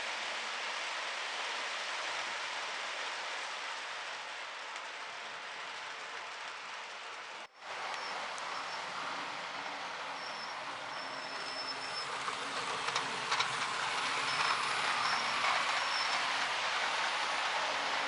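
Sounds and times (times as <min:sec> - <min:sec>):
model train motor whirring: 0:11.2 - 0:18.0.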